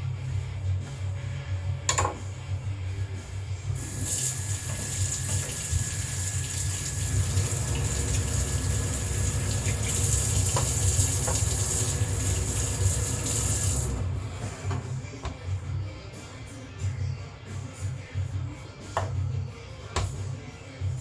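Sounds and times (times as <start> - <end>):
tap running into a sink: 3.8 - 15.4.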